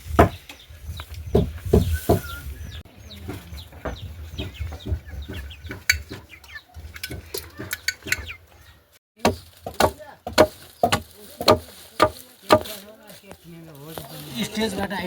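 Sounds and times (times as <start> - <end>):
chickens clucking: 0.2 - 9.0.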